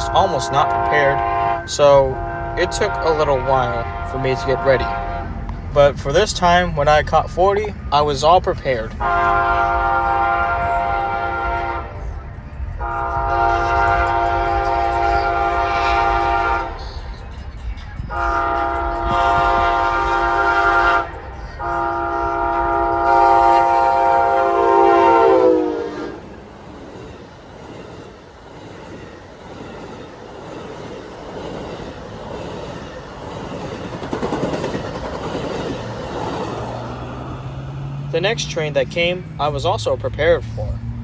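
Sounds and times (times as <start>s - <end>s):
train horn blasts: 0.0s - 5.9s, 8.9s - 26.4s
train wheels rumbling on rail: 0.0s - 41.0s.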